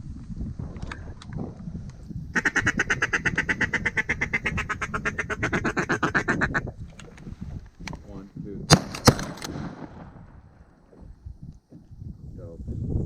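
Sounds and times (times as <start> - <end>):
wind rumbling: 0.0 - 13.0
duck call quacking: 2.4 - 6.6.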